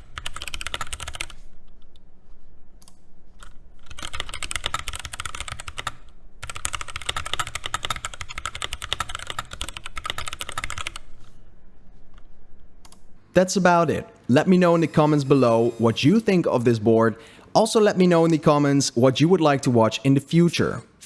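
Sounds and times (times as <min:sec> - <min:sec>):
mechanical keyboard typing: 0:00.0 - 0:01.9, 0:02.8 - 0:11.3.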